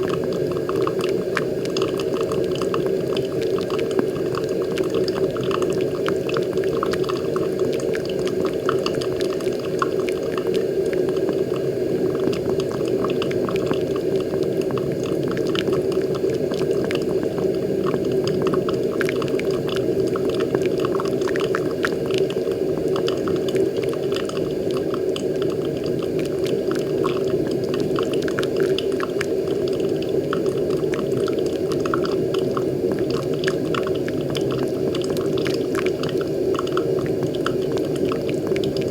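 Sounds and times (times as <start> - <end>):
coffee maker water rushing: 0.0 - 38.9.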